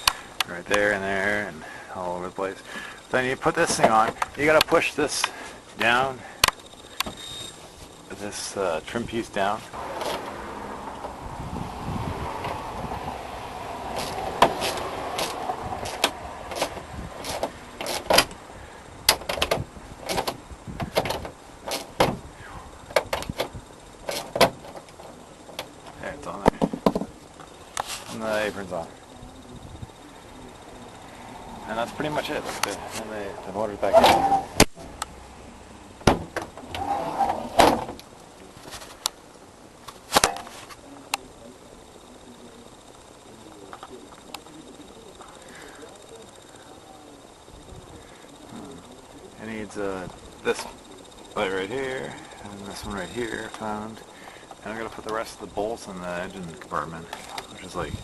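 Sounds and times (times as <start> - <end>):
sharp knocks and clanks: 26.4 - 27.2.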